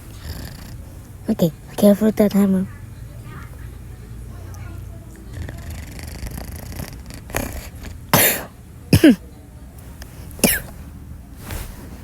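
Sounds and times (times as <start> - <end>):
person coughing: 8.2 - 9.2, 10.4 - 10.7.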